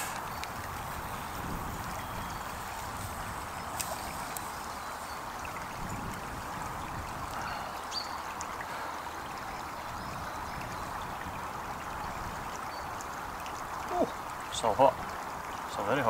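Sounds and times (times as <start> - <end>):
faint ticks: 0.0 - 0.6
stream babbling: 0.0 - 16.0.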